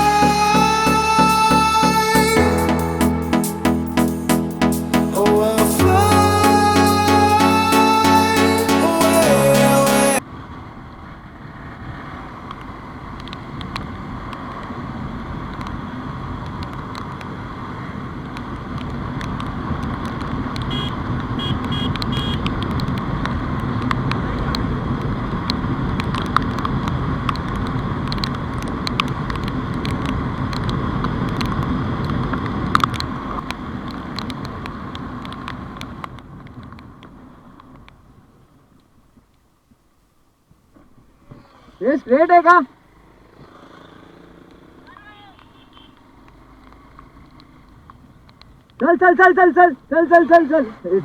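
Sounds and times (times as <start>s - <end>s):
sharp ticks: 18.3s - 36.2s
motorcycle engine: 42.7s - 48.4s.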